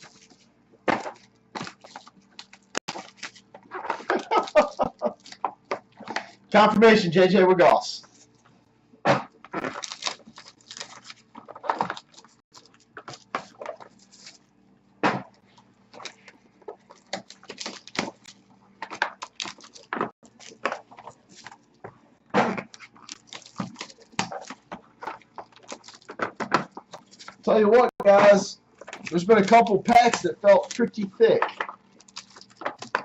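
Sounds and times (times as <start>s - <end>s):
card pack wrappers crinkling: 0.0s - 6.4s, 9.5s - 14.4s, 15.9s - 21.8s, 22.7s - 27.6s, 28.8s - 33.0s
cards rustling: 0.0s - 6.4s, 9.5s - 14.4s, 15.9s - 21.9s, 22.6s - 27.6s, 28.2s - 33.0s.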